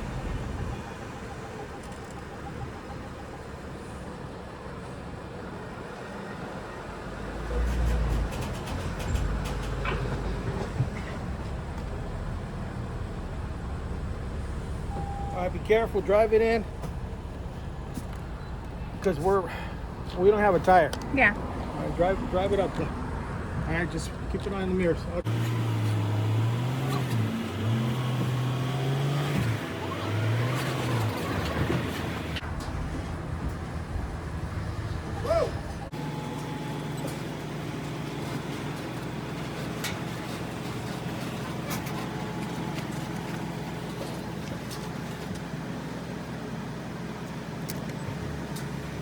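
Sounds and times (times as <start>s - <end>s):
vehicle engine idling: 0.0s - 7.3s, 8.1s - 49.0s
car engine revving: 25.2s - 32.4s.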